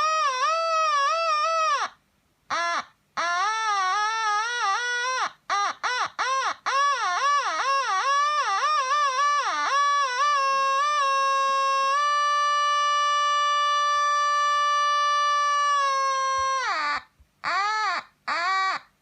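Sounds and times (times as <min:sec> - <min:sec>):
squealing fuzz electric guitar: 0:05.9 - 0:18.7.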